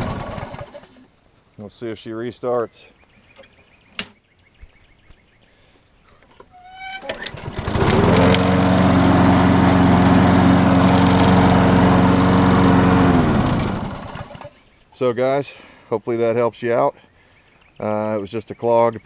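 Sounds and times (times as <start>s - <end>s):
lawn mower engine running: 0.0s - 0.9s, 6.7s - 14.5s.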